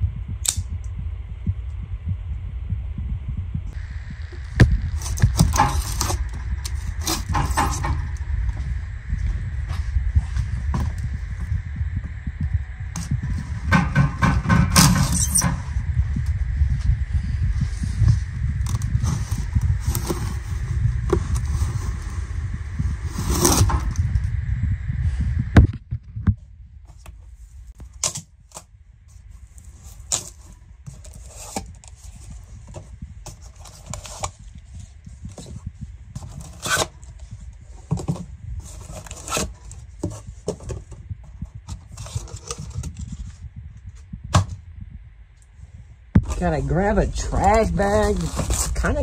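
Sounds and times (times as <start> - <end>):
low rumble: 0.0 - 49.0
cardboard scraping and rustling: 5.0 - 8.0, 18.6 - 22.3, 22.9 - 24.0, 27.8 - 43.4, 47.3 - 49.0.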